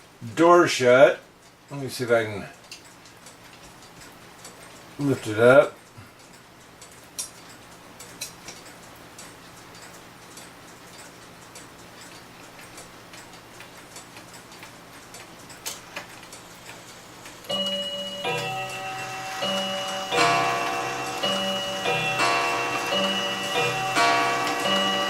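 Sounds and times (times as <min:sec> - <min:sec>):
pendulum clock ticking: 0:02.5 - 0:15.7, 0:16.3 - 0:25.0
clock chime tune: 0:17.5 - 0:25.0.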